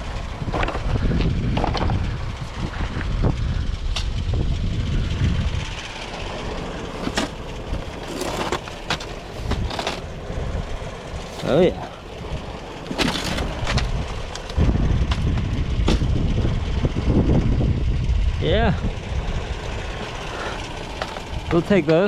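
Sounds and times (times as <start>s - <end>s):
vehicle road rumble: 0.0s - 22.0s
scrap metal clanking: 6.7s - 10.3s, 11.1s - 12.2s, 12.8s - 14.5s, 20.3s - 21.6s.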